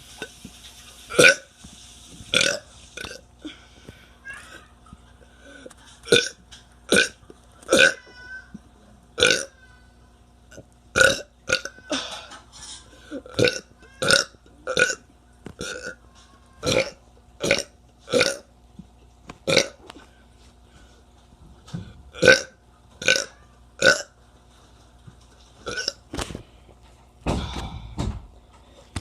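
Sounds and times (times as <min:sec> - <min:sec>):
teenager burping: 0:06.1 - 0:08.0, 0:09.2 - 0:09.5, 0:11.0 - 0:12.2, 0:13.2 - 0:15.0, 0:19.5 - 0:19.8, 0:22.2 - 0:24.1.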